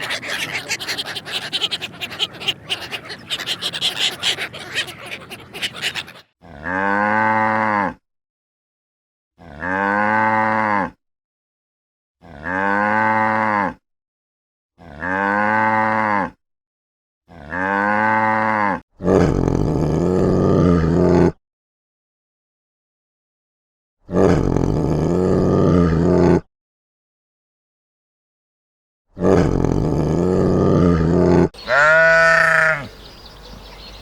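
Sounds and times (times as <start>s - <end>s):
rough animal call: 0.0s - 7.6s, 17.3s - 18.8s, 30.2s - 34.0s.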